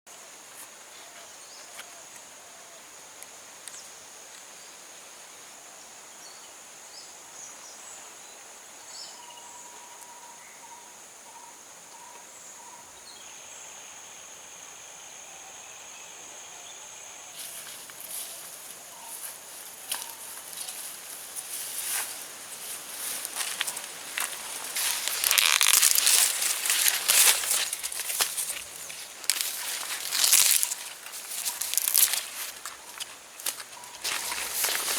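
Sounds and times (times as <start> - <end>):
high insect drone: 8.2 - 34.9
second insect tone: 9.1 - 34.9
crackly rustling: 17.4 - 34.9.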